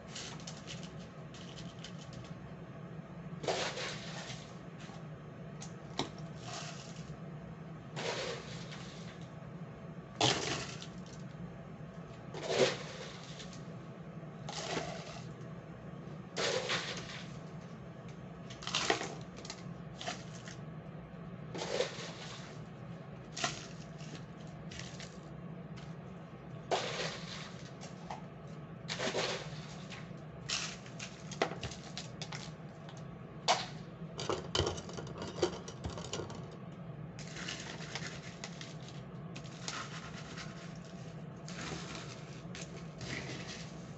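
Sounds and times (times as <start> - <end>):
steady low hum: 0.0 - 43.9
kitchenware clinking and knocking: 34.2 - 36.6.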